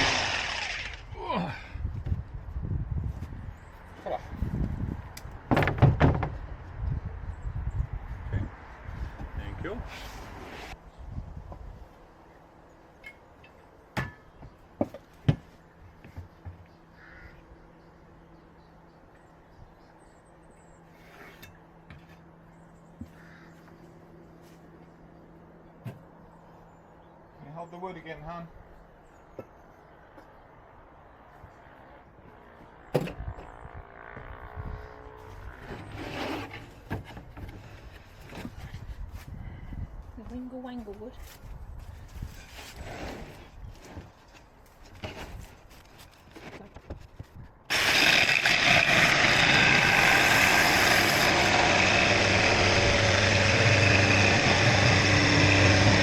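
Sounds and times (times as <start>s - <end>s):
scraping rush: 47.7s - 56.0s.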